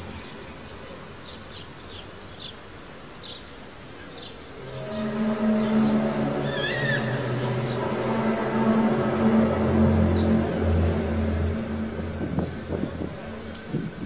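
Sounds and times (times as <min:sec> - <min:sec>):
low droning hum: 0:04.5 - 0:14.0
wavering high cry: 0:04.6 - 0:12.7.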